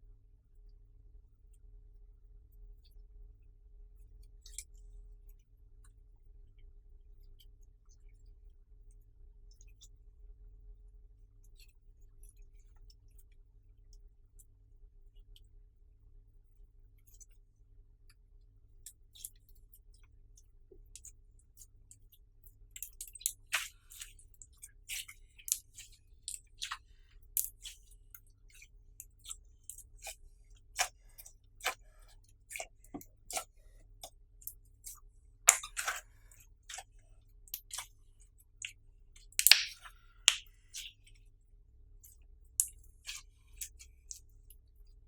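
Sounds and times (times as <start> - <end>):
slime sticky clicks and pops: 35.5 - 36.0, 39.4 - 40.9.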